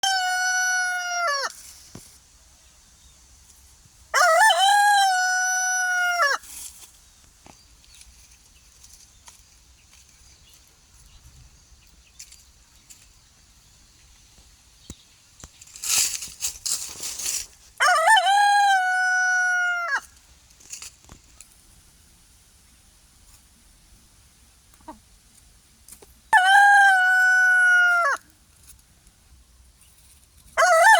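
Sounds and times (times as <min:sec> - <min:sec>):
rooster crowing: 0:00.0 - 0:01.5, 0:04.1 - 0:06.4, 0:17.8 - 0:20.1, 0:26.3 - 0:28.2, 0:30.6 - 0:30.9
noisy rustling: 0:06.4 - 0:17.8, 0:20.0 - 0:24.4.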